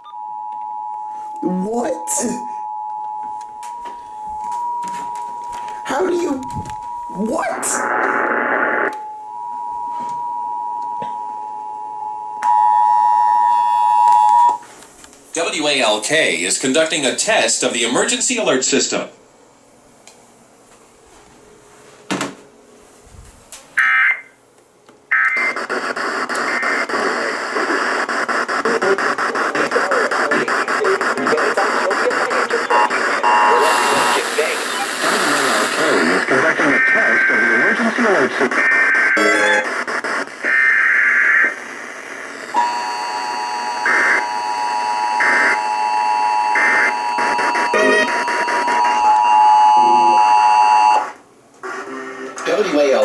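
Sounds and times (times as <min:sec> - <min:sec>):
harsh static noise with crackling: 0:03.3 - 0:10.2, 0:22.8 - 0:53.0
digital data screech: 0:07.1 - 0:08.9
two-tone attention signal: 0:30.3 - 0:34.2, 0:43.9 - 0:51.0.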